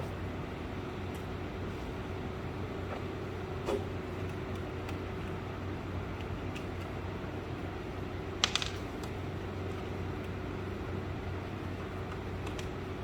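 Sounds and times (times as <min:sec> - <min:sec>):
fan humming: 0:00.0 - 0:13.0.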